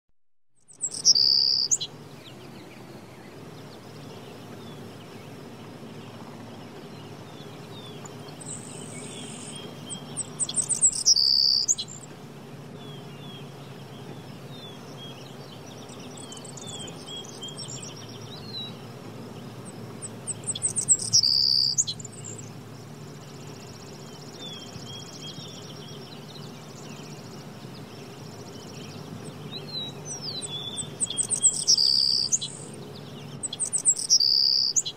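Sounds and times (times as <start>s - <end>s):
small birds chirping: 0.6s - 34.9s
loud close bird calls: 0.7s - 1.9s, 8.4s - 12.0s, 20.0s - 22.4s, 29.5s - 32.7s, 33.4s - 34.9s
low background rumble: 0.8s - 34.9s.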